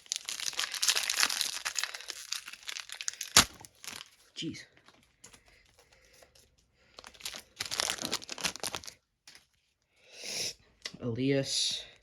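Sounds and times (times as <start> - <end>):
plastic wrapper tearing and crinkling: 0.0 - 4.3, 7.0 - 9.0.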